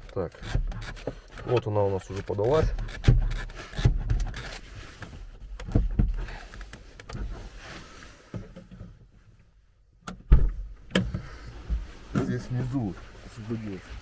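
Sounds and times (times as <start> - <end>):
plastic trim panel knocks and rubbing: 5.5 - 6.2.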